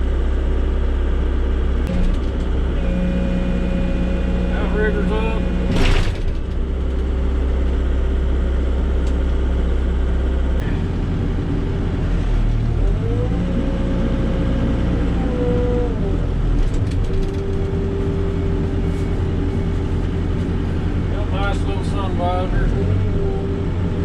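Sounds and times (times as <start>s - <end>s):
diesel engine running: 0.0s - 24.0s
hydraulic whine: 1.9s - 9.5s.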